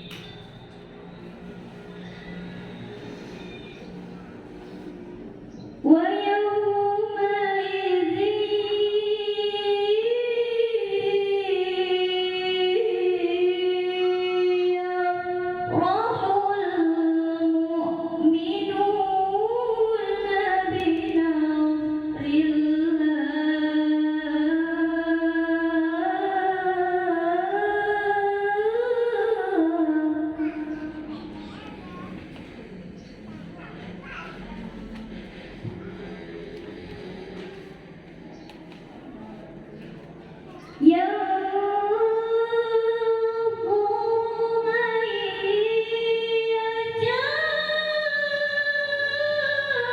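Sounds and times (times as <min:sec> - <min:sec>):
girl reciting melodically: 0:12.4 - 0:23.8, 0:27.0 - 0:37.3, 0:40.0 - 0:44.4.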